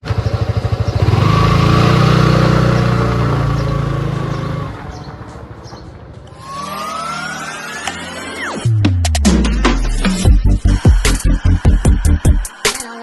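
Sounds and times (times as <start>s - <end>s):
motorcycle engine revving: 0.0s - 6.6s.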